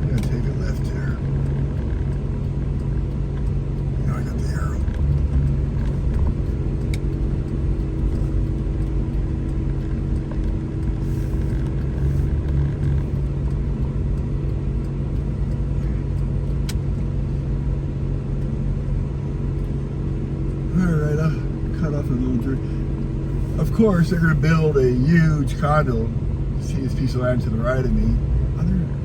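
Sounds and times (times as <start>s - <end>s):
sharp tick: 0.0s - 18.6s
car engine and road hum: 0.0s - 29.0s.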